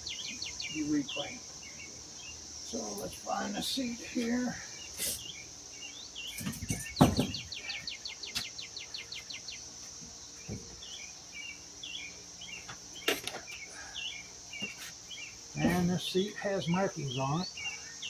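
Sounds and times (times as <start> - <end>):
birds chirping: 0.0 - 18.0
high insect buzz: 0.0 - 18.0
knocks of bike parts handled: 6.3 - 7.7, 12.6 - 13.6.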